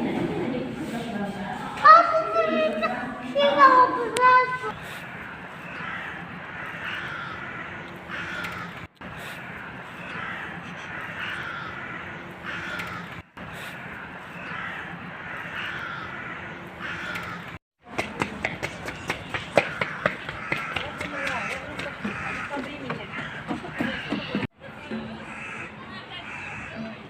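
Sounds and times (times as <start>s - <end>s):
crows cawing: 4.9s - 17.6s, 19.4s - 24.5s, 25.1s - 27.0s.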